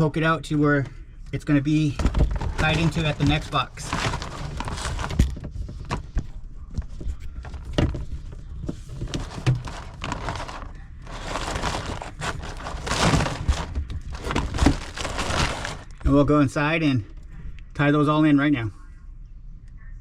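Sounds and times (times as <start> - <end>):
cable scraping rustle: 1.9 - 6.2, 6.8 - 16.3.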